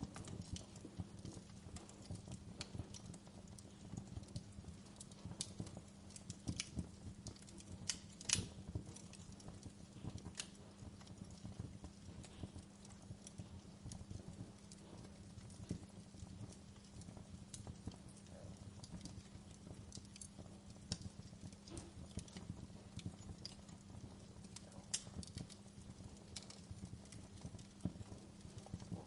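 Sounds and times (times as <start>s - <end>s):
wood fire crackling: 0.0s - 29.0s.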